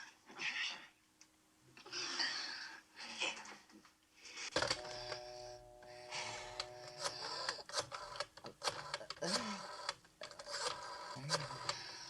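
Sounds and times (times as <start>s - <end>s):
rotary telephone dial clicking: 7.0s - 11.9s.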